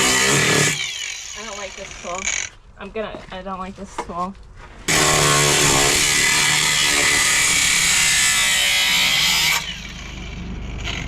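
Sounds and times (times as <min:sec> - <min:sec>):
power tool grinding sheet metal: 0:00.0 - 0:02.5, 0:04.9 - 0:11.0.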